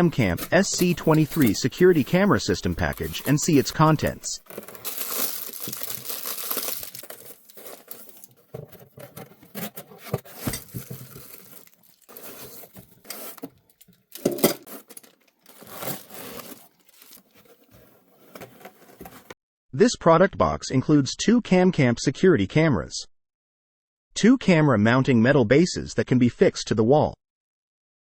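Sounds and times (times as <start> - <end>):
packaging tearing: 0.0 - 19.3
plastic wrap crinkling: 0.0 - 19.3.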